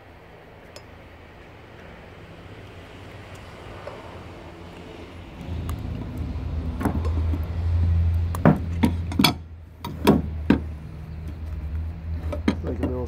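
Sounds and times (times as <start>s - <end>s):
steady low rumble: 1.2s - 12.8s.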